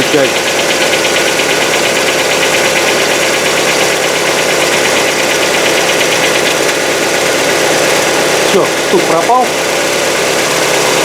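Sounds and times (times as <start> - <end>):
car engine idling: 0.0 - 11.0
valve lifters ticking: 0.0 - 11.0.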